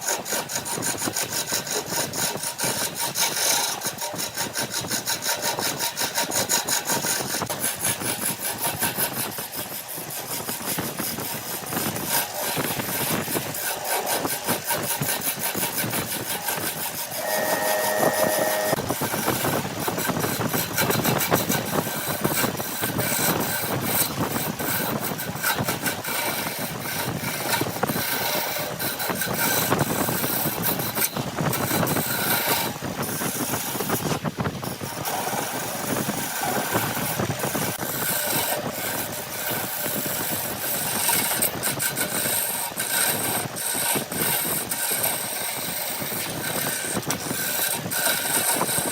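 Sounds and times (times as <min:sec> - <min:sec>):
brief steady tone: 0:17.2 - 0:18.8.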